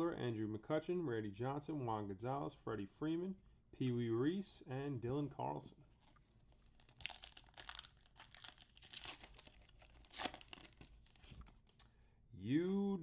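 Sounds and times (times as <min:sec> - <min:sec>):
wrapper tearing and crinkling: 0:06.5 - 0:11.8.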